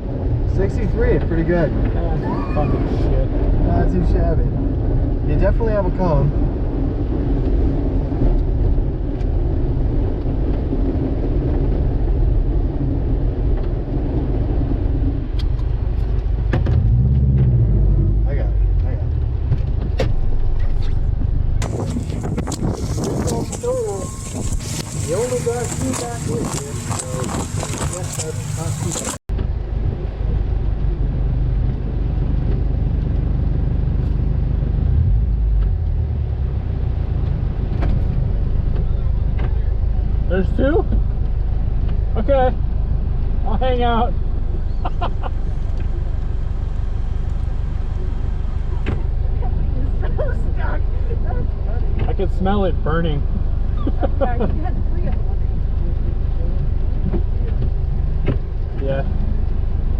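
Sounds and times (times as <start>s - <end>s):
car engine and road rumble: 0.0s - 59.9s.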